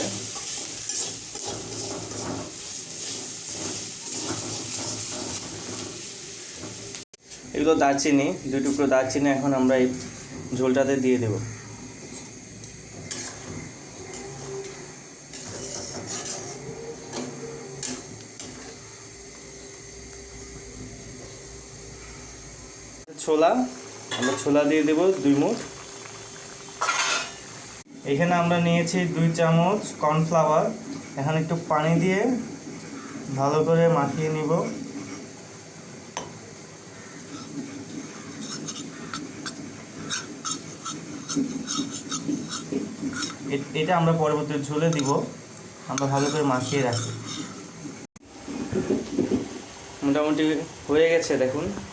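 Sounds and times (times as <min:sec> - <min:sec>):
spoon scraping a pot: 0:00.0 - 0:05.9, 0:13.0 - 0:18.9, 0:26.8 - 0:27.4, 0:37.0 - 0:43.7, 0:44.8 - 0:45.3, 0:45.9 - 0:47.9
stirring slurry in a bowl: 0:37.0 - 0:44.2, 0:45.9 - 0:48.0.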